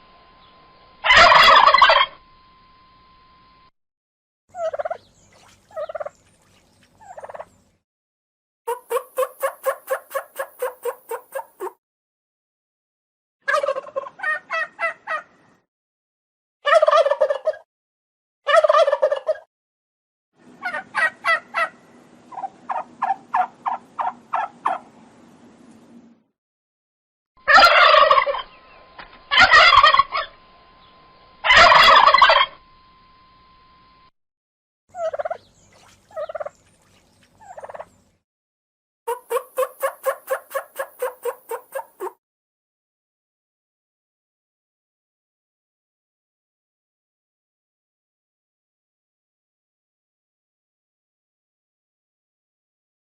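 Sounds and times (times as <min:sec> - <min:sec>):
turkey gobbling: 0:01.0 - 0:02.2, 0:04.6 - 0:05.1, 0:05.7 - 0:06.2, 0:07.0 - 0:07.6, 0:08.7 - 0:11.7, 0:13.5 - 0:15.3, 0:16.7 - 0:17.6, 0:18.5 - 0:19.5, 0:20.6 - 0:24.9, 0:27.4 - 0:28.6, 0:29.3 - 0:30.4, 0:31.4 - 0:32.6, 0:34.9 - 0:35.5, 0:36.1 - 0:36.6, 0:37.4 - 0:38.0, 0:39.1 - 0:42.2.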